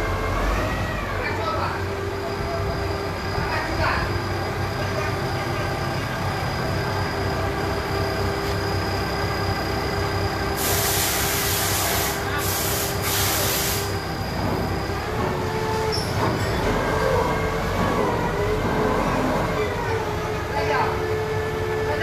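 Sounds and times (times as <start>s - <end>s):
cnc machines humming and whining: 0.0s - 22.0s
loud hiss of air or spray: 10.6s - 14.0s.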